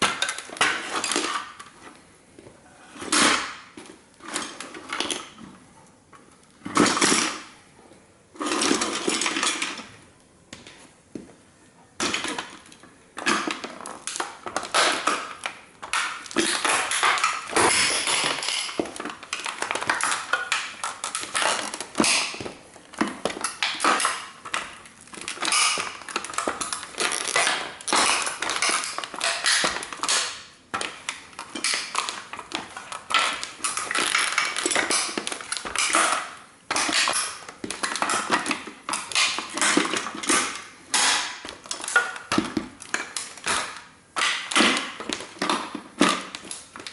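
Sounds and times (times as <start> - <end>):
model car being crushed underfoot: 3.0 - 5.4, 12.0 - 46.9.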